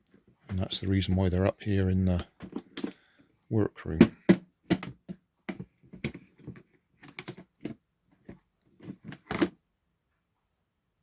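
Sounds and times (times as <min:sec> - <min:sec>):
plastic toolboxes clacking: 0:02.1 - 0:03.1, 0:03.8 - 0:09.6.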